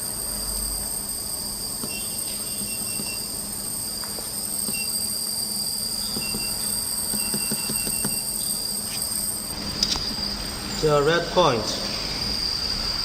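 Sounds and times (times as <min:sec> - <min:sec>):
high-pitched machine whine: 0:00.0 - 0:13.0
short electronic beeps: 0:04.7 - 0:05.0, 0:06.2 - 0:08.4.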